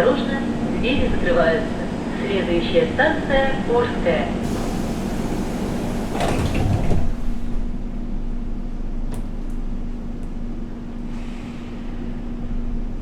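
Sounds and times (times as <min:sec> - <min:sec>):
standing train humming: 0:04.3 - 0:08.1
train doors sliding shut: 0:04.4 - 0:07.8.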